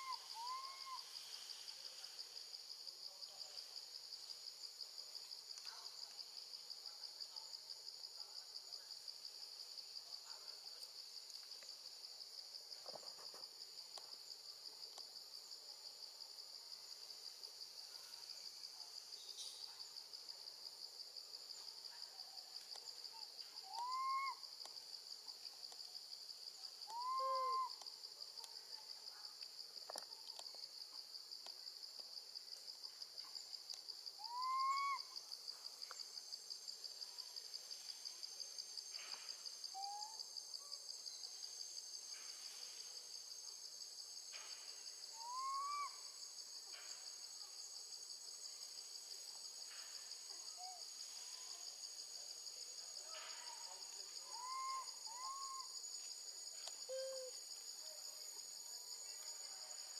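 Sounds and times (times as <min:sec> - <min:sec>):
insect chorus: 0:00.0 - 0:59.9
baby monkey coo calls: 0:23.6 - 0:24.4, 0:26.9 - 0:27.7, 0:34.2 - 0:35.2, 0:45.2 - 0:46.0, 0:54.3 - 0:55.7.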